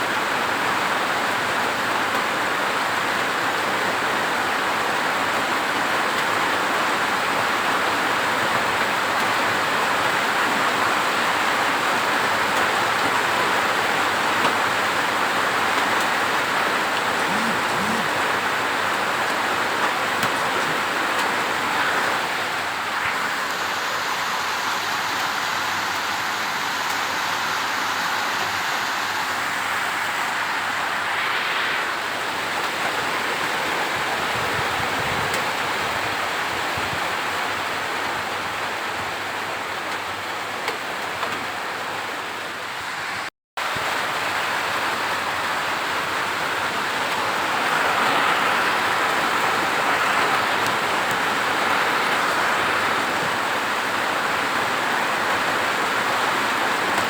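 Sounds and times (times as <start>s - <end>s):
steady rain: 0.0s - 57.0s.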